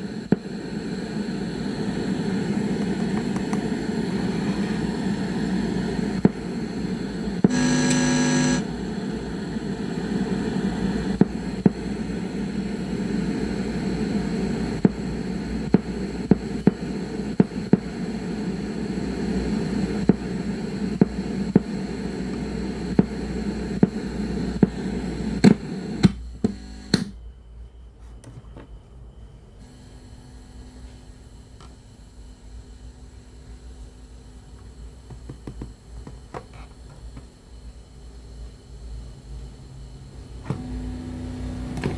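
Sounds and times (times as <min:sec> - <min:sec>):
radio static hum and noise: 0:00.0 - 0:26.9
radio crackles: 0:00.0 - 0:27.0
short buzzing tone: 0:07.5 - 0:08.7.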